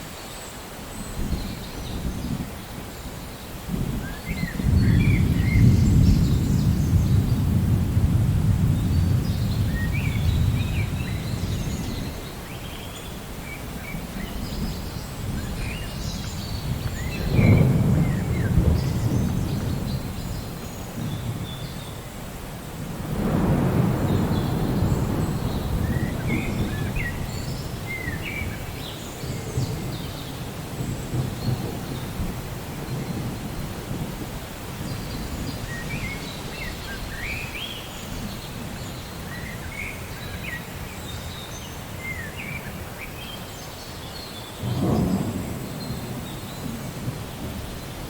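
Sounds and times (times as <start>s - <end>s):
rain falling: 0.0s - 48.0s
thunder rumbling: 3.7s - 12.3s, 13.5s - 21.8s, 22.6s - 39.3s, 44.6s - 48.0s.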